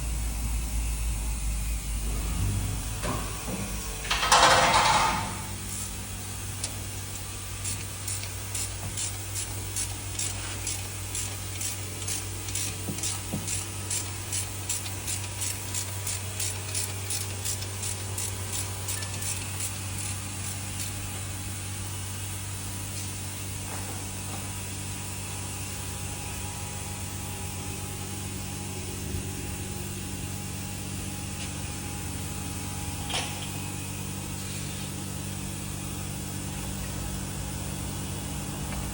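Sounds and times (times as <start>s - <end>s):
steady low hum: 0.0s - 38.9s
rhythmic rubbing or spraying strokes: 5.5s - 21.2s.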